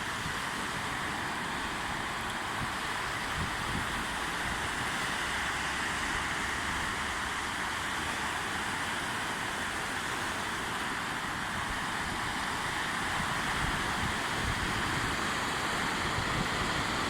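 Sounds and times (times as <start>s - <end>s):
sea surf rushing: 0.0s - 17.0s
wind on microphone: 2.5s - 4.2s, 11.6s - 17.0s.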